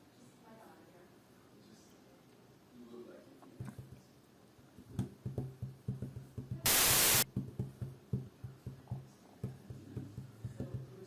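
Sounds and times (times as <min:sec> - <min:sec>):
loud static hiss: 0:06.7 - 0:07.3.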